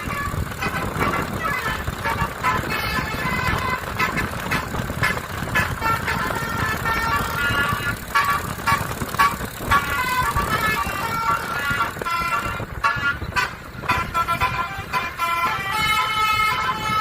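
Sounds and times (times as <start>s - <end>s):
bus horn playing a melody: 0.0s - 17.0s
low rumble: 0.0s - 17.0s.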